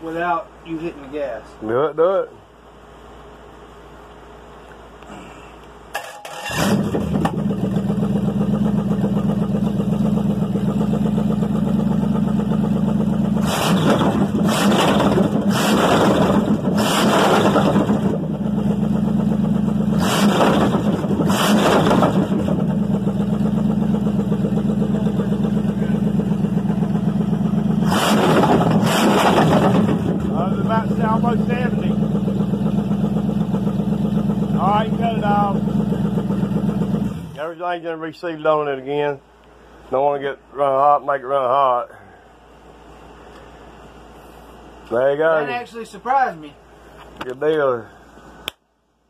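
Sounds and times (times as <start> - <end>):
car engine running: 3.0 - 41.4.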